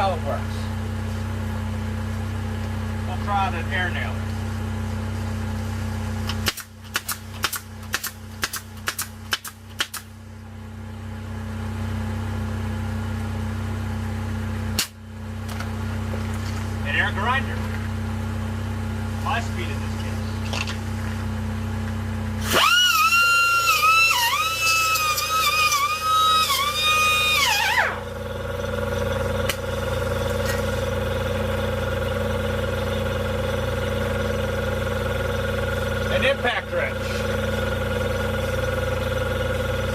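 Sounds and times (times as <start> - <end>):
engine humming: 0.0 - 39.9
pneumatic nailer firing: 6.2 - 10.1, 14.7 - 15.0, 22.4 - 28.1
pneumatic air grinder whine: 22.3 - 39.9.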